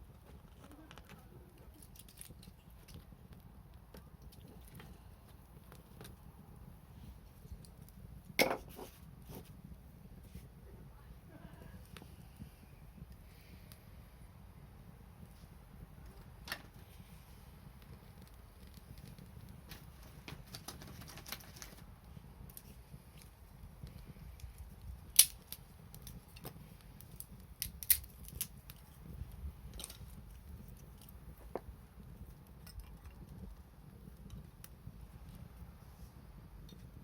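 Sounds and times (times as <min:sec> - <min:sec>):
bonfire crackling and popping: 0:00.0 - 0:37.0.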